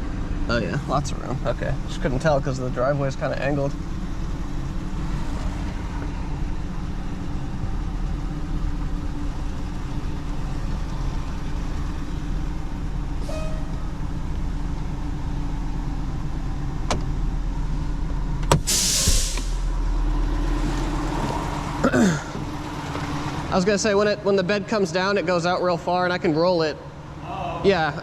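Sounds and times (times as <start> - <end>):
truck engine idling: 0.0 - 28.0
air hissing: 18.5 - 19.8.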